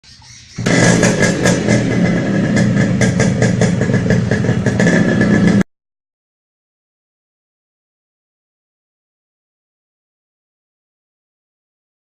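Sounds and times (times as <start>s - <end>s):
motorcycle engine running loud: 0.6s - 5.7s.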